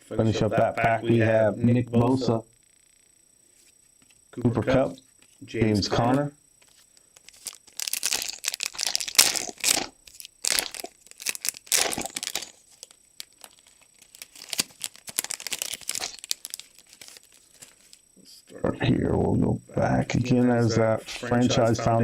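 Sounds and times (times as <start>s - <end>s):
wrapper tearing and crinkling: 7.2s - 18.0s.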